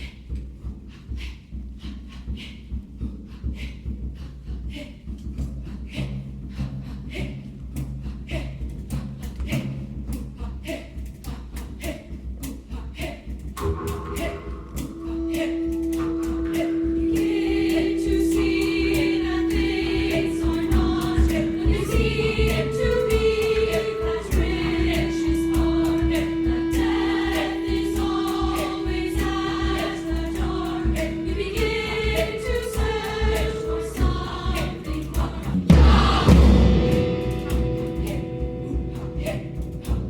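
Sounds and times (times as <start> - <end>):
low pulsing beat: 13.5 - 40.0
long held note: 13.6 - 35.2, 36.2 - 40.0
girls' choir singing: 13.6 - 40.0.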